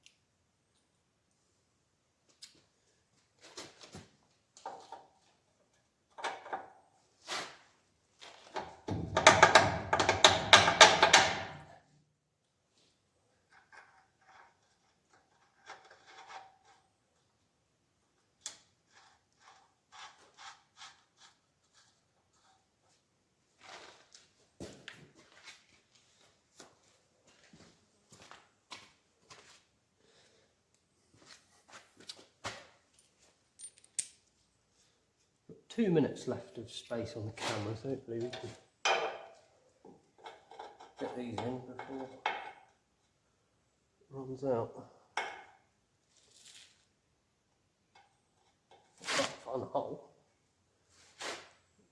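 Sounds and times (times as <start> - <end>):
metal parts knocking and clanking: 8.8 - 11.6.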